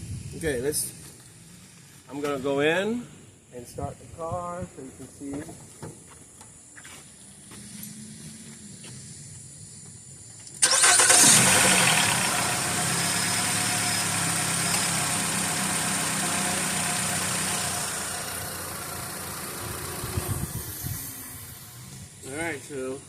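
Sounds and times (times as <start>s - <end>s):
car engine cranking and idling: 7.4s - 23.0s.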